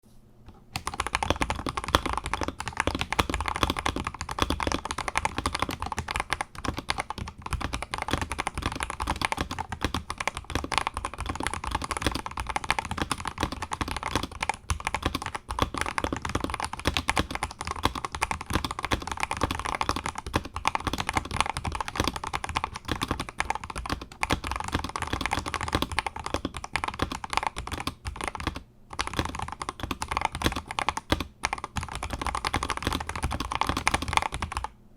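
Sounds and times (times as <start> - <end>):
mechanical keyboard typing: 0.7 - 34.8.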